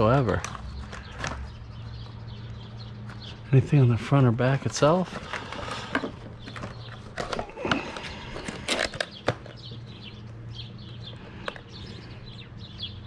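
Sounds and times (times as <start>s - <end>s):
packaging handled: 0.0s - 2.0s, 4.6s - 9.7s.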